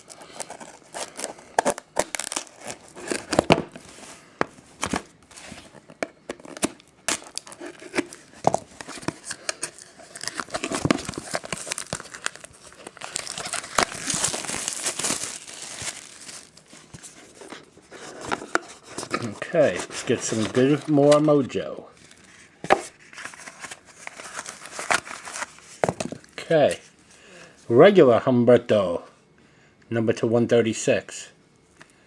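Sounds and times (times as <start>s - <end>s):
plastic wrapping tearing and crinkling: 0.0s - 3.8s, 6.3s - 17.2s, 23.2s - 26.3s.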